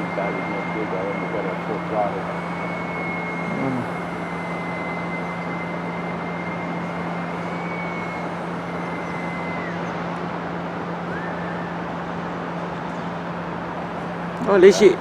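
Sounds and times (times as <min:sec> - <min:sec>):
electric model airplane motor whining: 0:00.0 - 0:10.0
steady low hum: 0:00.0 - 0:15.0.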